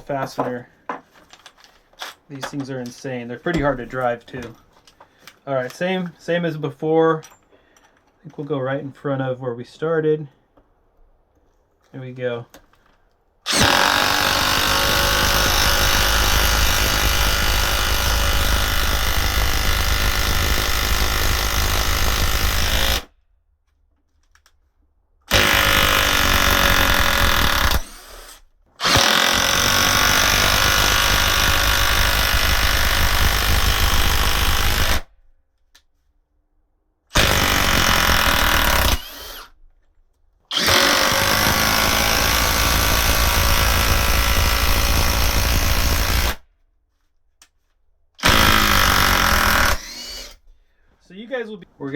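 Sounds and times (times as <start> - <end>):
impact wrench driving screw: 13.5 - 23.1, 25.3 - 35.1, 40.5 - 46.4, 48.2 - 50.4.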